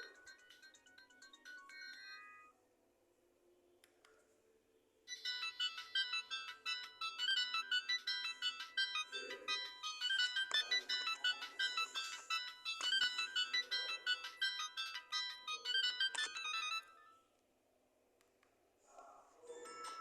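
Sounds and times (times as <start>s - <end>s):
mobile phone ringtone melody: 0.0s - 2.7s, 5.1s - 17.3s, 19.4s - 20.0s.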